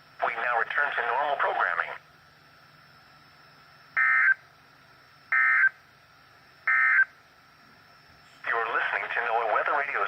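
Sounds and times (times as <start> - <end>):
digital data tone bursts: 6.6 - 7.1.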